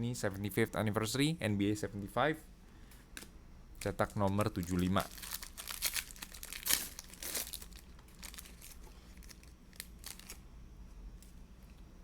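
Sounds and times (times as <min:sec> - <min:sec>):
foil wrapper crinkling and tearing: 0:03.8 - 0:10.4.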